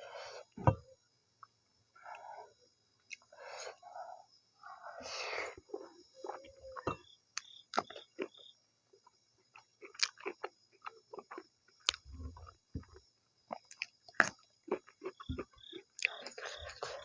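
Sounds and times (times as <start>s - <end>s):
wet chewing and smacking: 9.5s - 17.0s.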